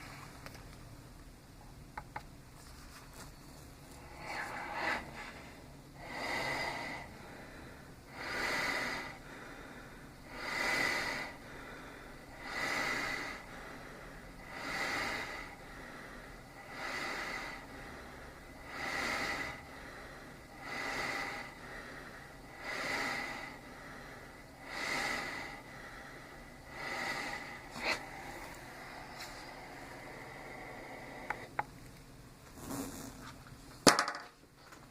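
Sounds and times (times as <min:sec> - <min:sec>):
high whine: 0:03.1 - 0:16.6, 0:20.2 - 0:31.7
breathing machine hissing air: 0:03.9 - 0:31.6.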